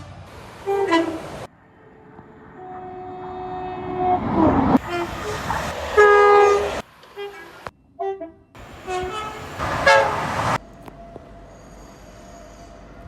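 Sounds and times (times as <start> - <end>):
train horn blasts: 0.6 - 10.6
short train horn toots: 0.7 - 1.2, 2.6 - 5.4, 6.0 - 10.6.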